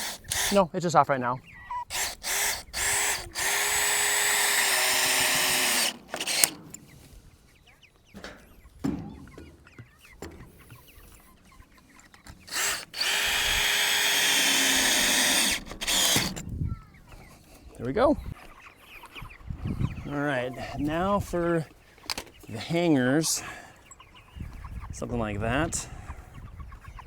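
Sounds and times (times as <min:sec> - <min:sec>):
power drill driving screws into wood: 0:00.0 - 0:00.6, 0:01.8 - 0:06.7, 0:12.4 - 0:16.4.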